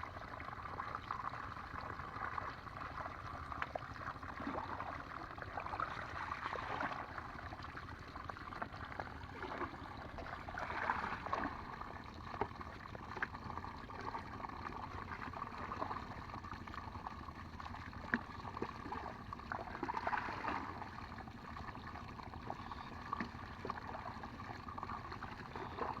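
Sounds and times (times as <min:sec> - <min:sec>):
water gurgling and splashing: 0:00.0 - 0:26.0.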